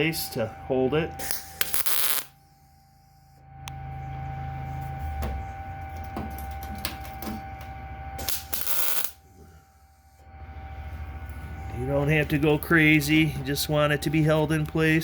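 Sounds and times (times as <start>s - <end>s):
welder humming: 0.0s - 15.0s
crackling welding arc: 1.2s - 2.5s, 8.2s - 9.2s.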